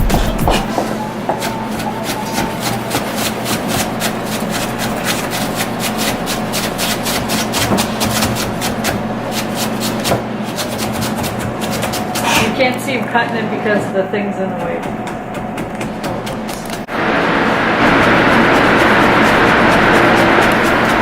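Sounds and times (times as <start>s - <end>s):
knife chopping on cutting board: 0.0s - 12.7s, 14.5s - 16.9s.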